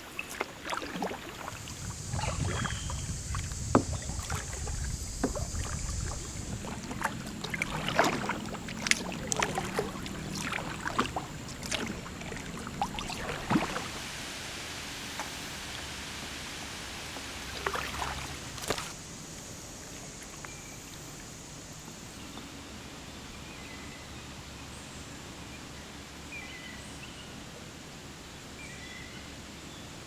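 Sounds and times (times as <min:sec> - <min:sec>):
kayak paddle splashing: 0:00.0 - 0:19.0
water hiss: 0:00.0 - 0:22.1
light rain: 0:01.2 - 0:20.5.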